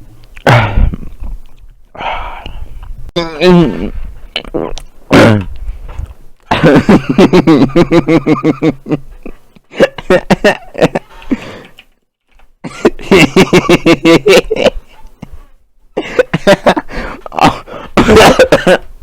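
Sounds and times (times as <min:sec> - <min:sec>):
man laughing hard: 0:06.5 - 0:11.4, 0:12.6 - 0:15.4, 0:16.0 - 0:18.9.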